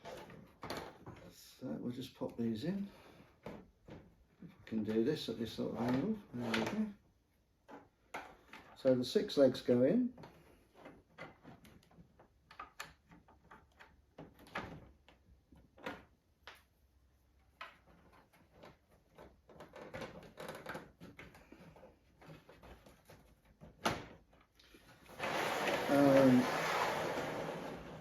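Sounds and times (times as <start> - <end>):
plastic parts clicking and knocking: 0.0 - 1.3, 7.6 - 8.8, 10.1 - 25.1.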